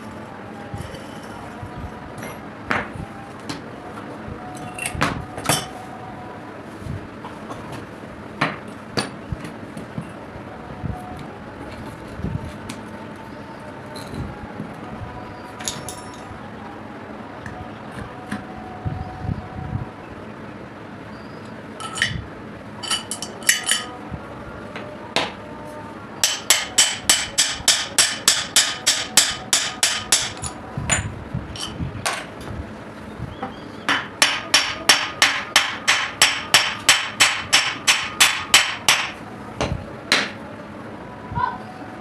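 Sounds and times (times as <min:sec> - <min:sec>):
hammer striking metal: 0:26.2 - 0:30.6, 0:33.9 - 0:39.2.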